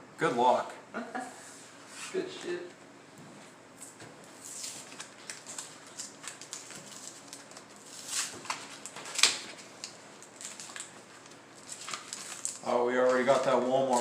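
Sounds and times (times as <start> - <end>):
card packs clicking and crinkling: 4.6 - 14.0.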